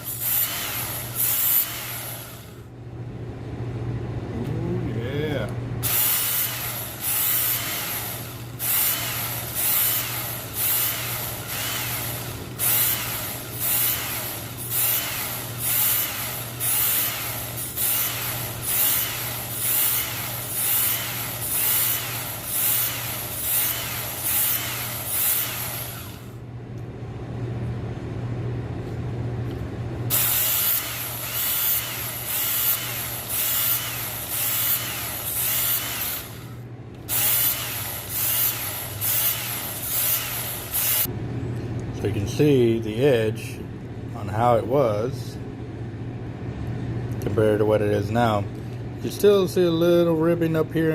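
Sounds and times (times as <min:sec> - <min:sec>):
sharpener motor hum: 0:05.9 - 0:26.3, 0:30.1 - 0:41.1.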